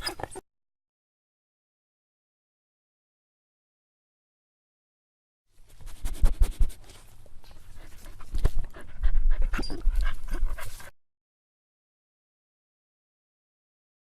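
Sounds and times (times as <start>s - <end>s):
dog whining: 0.0s - 0.4s, 9.4s - 10.5s
dog panting: 7.5s - 11.0s.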